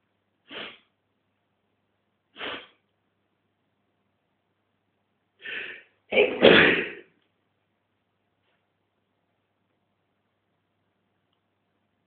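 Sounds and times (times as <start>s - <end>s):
man's sharp breaths through nose: 0.4s - 0.9s, 2.4s - 2.8s, 5.4s - 5.9s.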